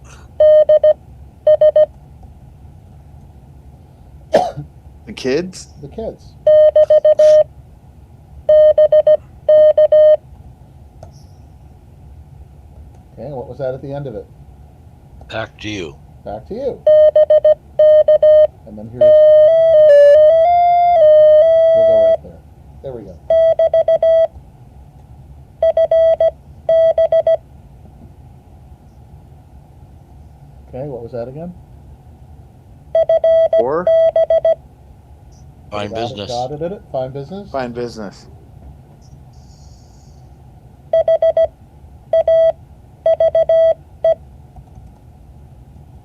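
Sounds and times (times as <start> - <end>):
morse code beeps: 0.4 - 1.9, 6.5 - 7.5, 8.5 - 10.2, 16.9 - 22.2, 23.3 - 24.3, 25.6 - 27.4, 33.0 - 34.6, 40.9 - 41.5, 42.1 - 44.2.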